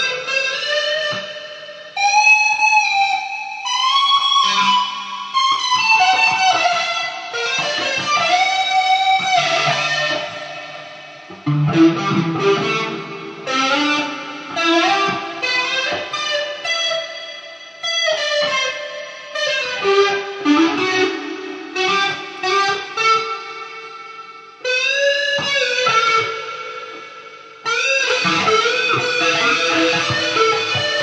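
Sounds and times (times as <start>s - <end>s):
slide guitar melody: 0.0s - 1.3s, 2.0s - 23.6s, 24.6s - 31.0s.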